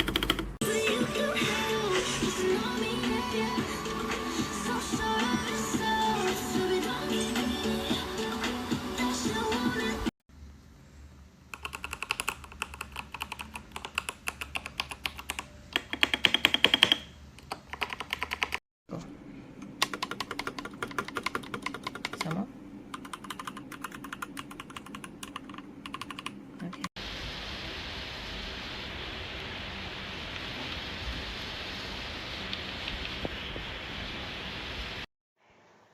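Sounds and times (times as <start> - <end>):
clicky keyboard typing: 0.0 - 0.6, 11.5 - 18.6, 19.7 - 22.3, 22.9 - 26.9
steady hiss: 27.0 - 35.9.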